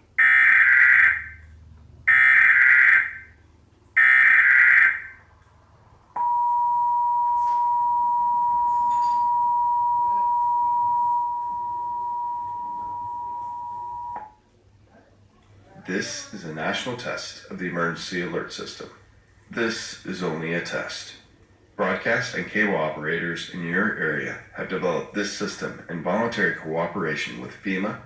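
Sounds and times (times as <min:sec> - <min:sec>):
steady two-tone alert tone: 0:06.2 - 0:14.3.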